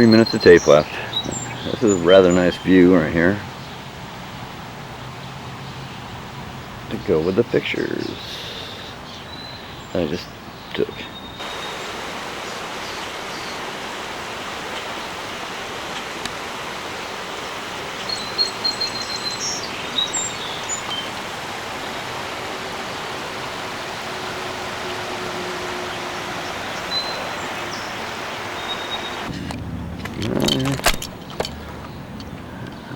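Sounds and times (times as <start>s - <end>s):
high bird chirps: 18.0s - 29.3s
outdoor rushing noise: 19.7s - 32.5s.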